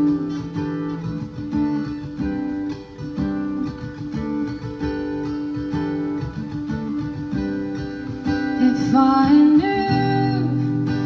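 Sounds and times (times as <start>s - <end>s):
person singing: 0.0s - 0.9s, 8.6s - 11.0s
acoustic guitar strumming: 0.0s - 11.0s.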